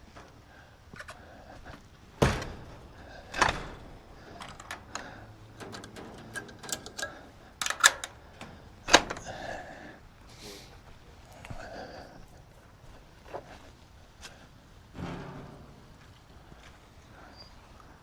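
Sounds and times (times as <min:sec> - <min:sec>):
door knocks and clicks: 0:02.2 - 0:09.4.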